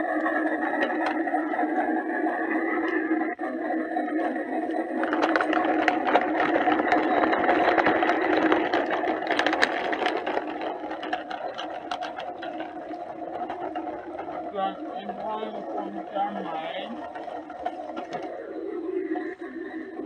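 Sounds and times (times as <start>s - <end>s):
rattling clicks: 0.0s - 1.6s, 4.6s - 19.4s
toy electric motor whirring: 0.0s - 20.0s.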